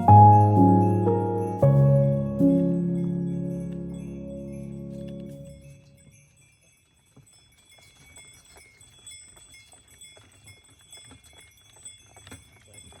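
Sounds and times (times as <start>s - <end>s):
background music: 0.0s - 5.8s
harness bells jingling: 0.0s - 13.0s.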